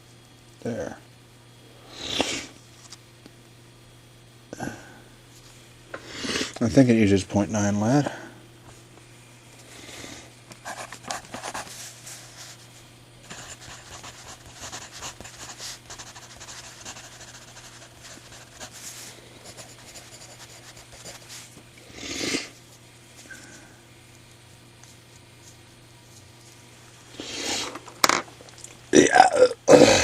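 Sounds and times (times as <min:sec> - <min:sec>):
pencil scratching on paper: 0:10.7 - 0:11.7, 0:13.3 - 0:21.3.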